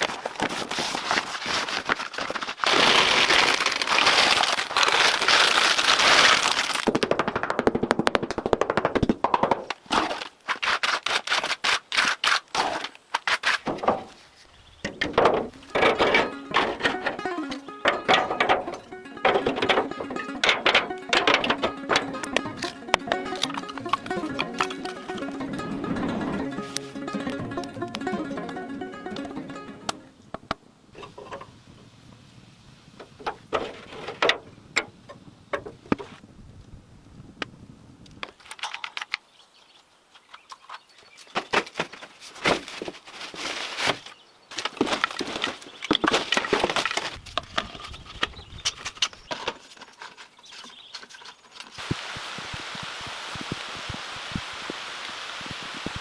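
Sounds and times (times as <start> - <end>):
wood being handled and worked: 0.0 - 31.6, 33.0 - 36.2, 38.2 - 53.6
background music: 15.6 - 30.2
steady hiss: 51.6 - 56.0.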